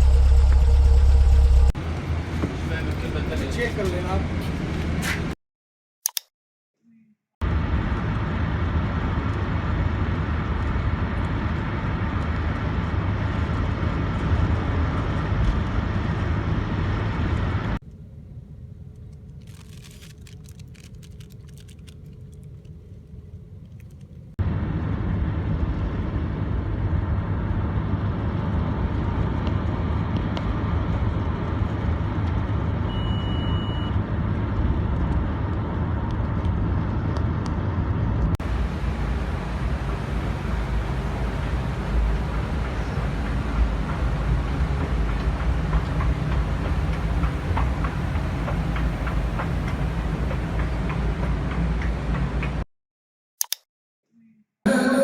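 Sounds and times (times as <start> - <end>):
vehicle road and engine rumble: 0.0 - 5.4, 7.4 - 52.7
short high beep: 32.9 - 34.0.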